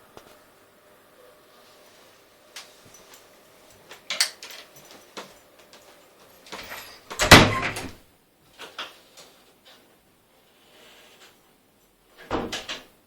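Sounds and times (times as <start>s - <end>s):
door clicks and knocks: 6.6s - 8.0s, 12.2s - 12.9s
door closing thud: 6.6s - 8.0s, 12.2s - 12.9s.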